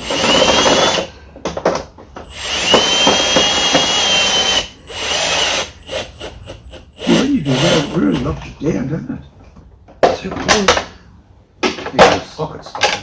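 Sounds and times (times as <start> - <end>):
drill clicks: 0.0 - 1.1, 2.2 - 8.0
power drill whining: 0.0 - 1.2, 2.2 - 8.4.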